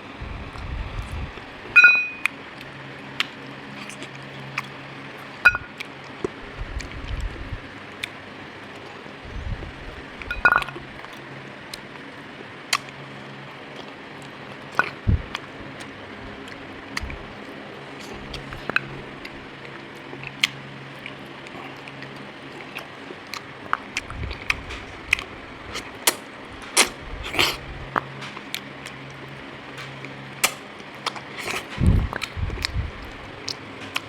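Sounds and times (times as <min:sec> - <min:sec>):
low background hum: 0:00.0 - 0:34.0
eating clicks and smacks: 0:02.2 - 0:04.8, 0:12.7 - 0:13.0, 0:13.8 - 0:29.1, 0:29.8 - 0:34.0.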